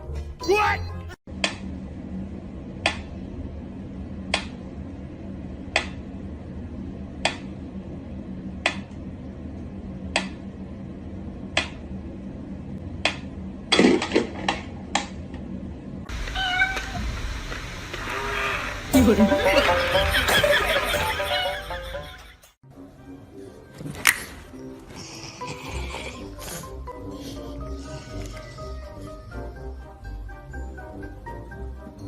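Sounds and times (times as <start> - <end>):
steady low hum: 1.3 - 22.3.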